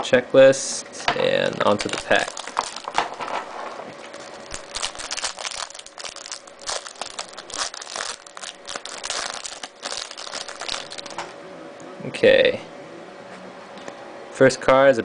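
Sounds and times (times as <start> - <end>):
card pack wrapper crinkling: 1.6 - 11.3.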